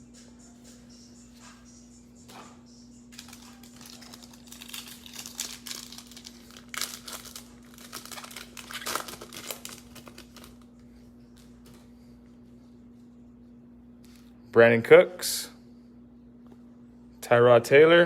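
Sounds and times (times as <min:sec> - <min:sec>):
faint steady hum: 0:00.0 - 0:18.0
plastic wrapper crinkling: 0:03.1 - 0:10.8.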